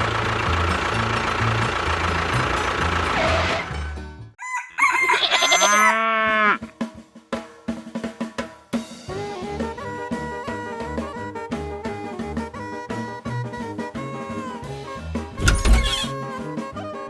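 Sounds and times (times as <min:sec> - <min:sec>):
music: 0:00.0 - 0:04.4, 0:06.6 - 0:17.0
rooster crowing: 0:04.4 - 0:06.6.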